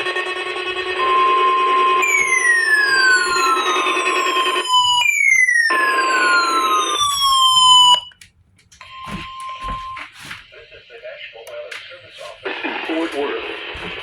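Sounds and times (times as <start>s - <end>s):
radio warning alarm tone: 0.0s - 14.0s
falling siren-like sweeps: 1.5s - 8.1s
radio static: 9.1s - 14.0s.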